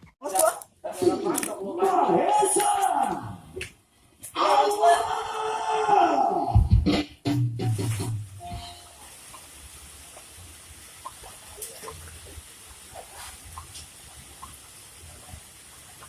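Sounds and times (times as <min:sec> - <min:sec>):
steady hiss: 0:07.6 - 0:16.0
running water: 0:07.8 - 0:16.0.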